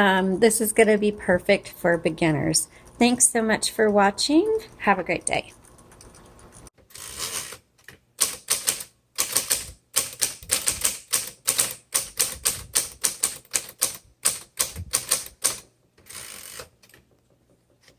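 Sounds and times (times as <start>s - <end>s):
typewriter keys clacking: 8.2s - 17.0s.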